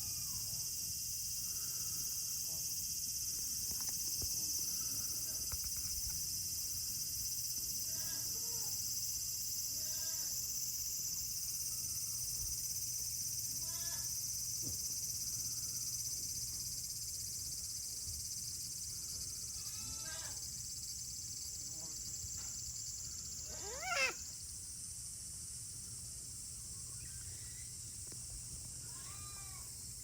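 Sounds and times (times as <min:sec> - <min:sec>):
insects droning: 0:00.0 - 0:30.0.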